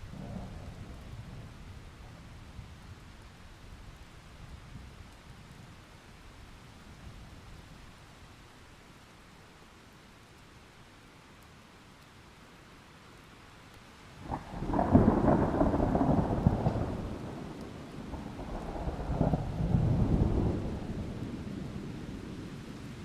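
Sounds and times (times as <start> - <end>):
low thunder rumble: 0.0 - 3.2, 14.2 - 22.8
faint steady hiss: 0.0 - 23.0
thunder crack: 14.3 - 21.2.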